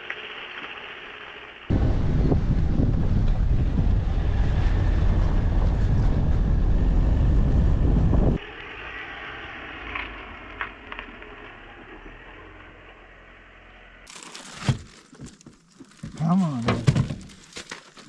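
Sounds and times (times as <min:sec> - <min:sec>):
wind buffeting microphone: 0:01.7 - 0:08.4.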